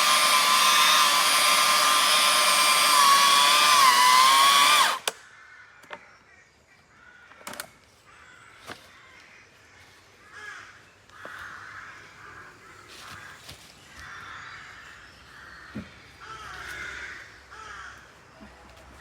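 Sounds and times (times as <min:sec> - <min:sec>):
electric chainsaw whine: 0:00.0 - 0:05.2.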